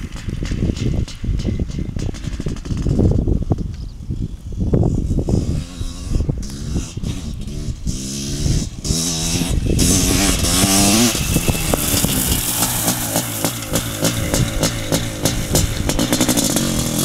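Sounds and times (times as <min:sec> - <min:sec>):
two-stroke engine revving: 0:04.9 - 0:17.0.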